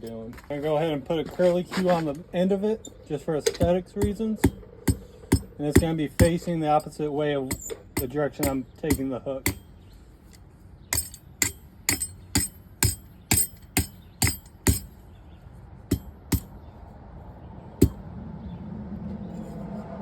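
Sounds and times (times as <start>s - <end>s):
hammer striking steel on anvil: 3.6s - 9.7s, 10.9s - 14.9s, 15.9s - 16.5s, 17.8s - 18.0s.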